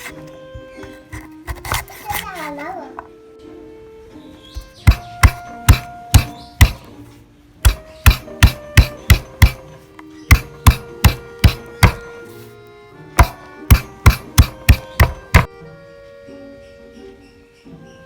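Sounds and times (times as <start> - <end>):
quiet background music: 0.0 - 18.0
knife chopping on cutting board: 1.2 - 2.2, 4.6 - 7.0, 7.6 - 12.1, 13.2 - 15.5.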